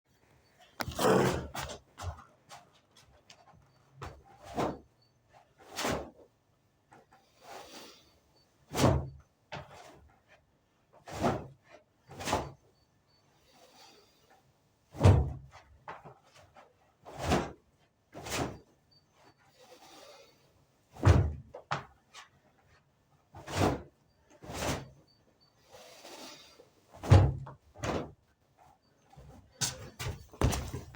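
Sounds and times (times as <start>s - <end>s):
sharp thuds: 29.6s - 30.9s.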